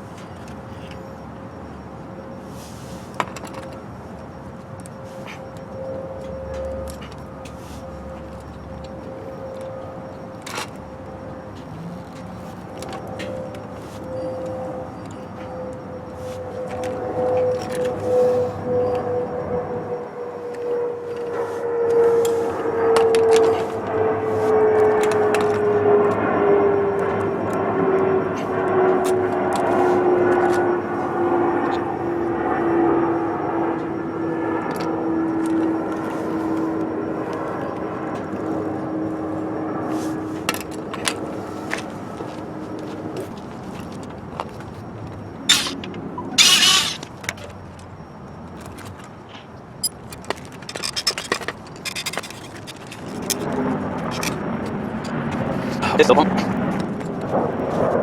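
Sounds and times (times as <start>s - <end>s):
engine drone falling in pitch: 0.0s - 48.9s
metallic clicks and rattles of tools: 45.5s - 47.5s
loud scrape or rustle: 46.4s - 47.0s.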